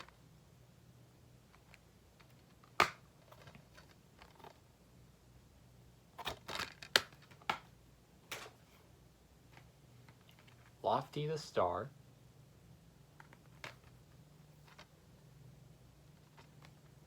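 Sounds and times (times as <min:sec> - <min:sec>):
plastic case clicks and snaps: 0:02.6 - 0:03.5, 0:06.2 - 0:07.7.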